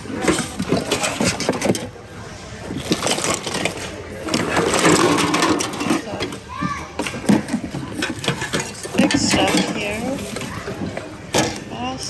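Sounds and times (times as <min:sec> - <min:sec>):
items knocking and rustling: 0:00.0 - 0:12.0
background voices: 0:03.9 - 0:06.8, 0:07.8 - 0:12.0.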